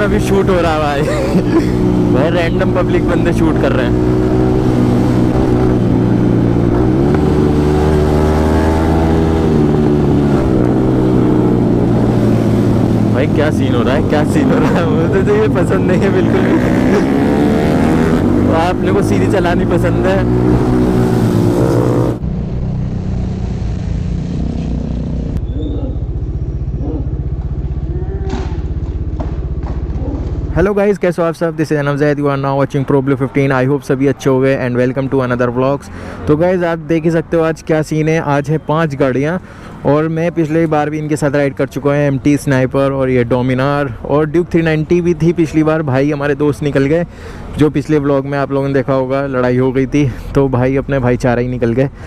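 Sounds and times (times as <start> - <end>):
motorcycle engine revving: 0.0 - 30.8
motorcycle engine idling: 25.4 - 30.7.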